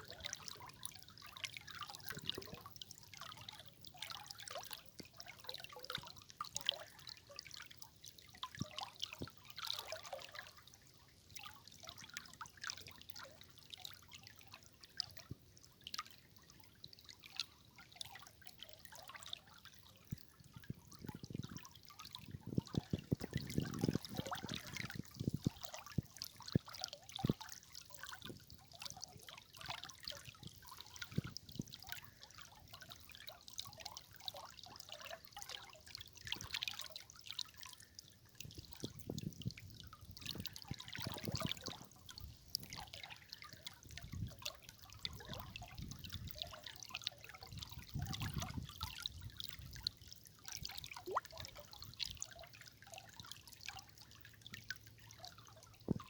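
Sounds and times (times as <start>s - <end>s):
river water trickling and splashing: 0.0s - 56.0s
deep gurgling plops: 20.1s - 32.9s, 38.4s - 46.6s, 47.2s - 49.8s, 50.5s - 51.9s.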